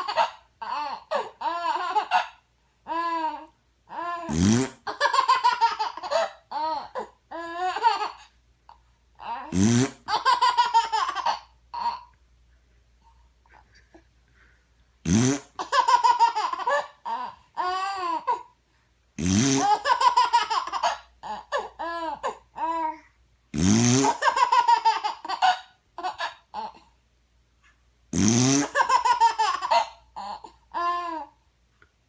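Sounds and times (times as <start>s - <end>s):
baby laughing: 0.0s - 12.1s, 15.5s - 18.5s, 19.6s - 22.9s, 24.0s - 26.9s, 28.6s - 31.3s
fart noise rising in pitch: 4.3s - 4.9s, 9.5s - 10.1s, 15.0s - 15.6s, 19.2s - 19.8s, 23.6s - 24.2s, 28.1s - 28.8s.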